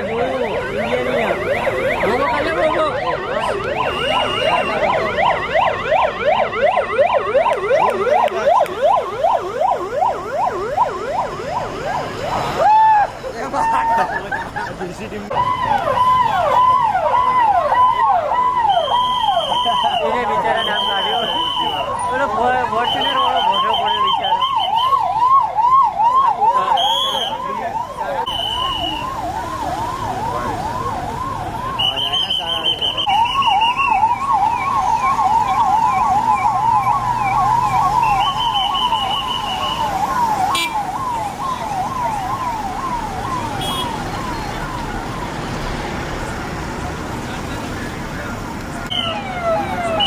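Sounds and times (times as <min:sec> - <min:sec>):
vehicle siren yelping: 0:00.0 - 0:14.4, 0:15.3 - 0:50.0.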